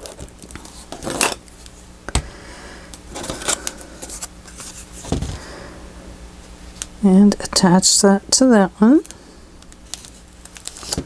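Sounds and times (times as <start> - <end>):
paper and card rustling: 3.1 - 5.4, 9.9 - 11.0.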